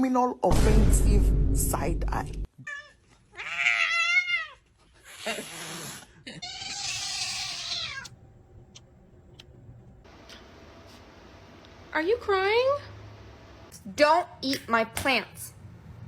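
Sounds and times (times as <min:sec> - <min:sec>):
cat meowing: 0:02.6 - 0:04.6, 0:06.4 - 0:08.1.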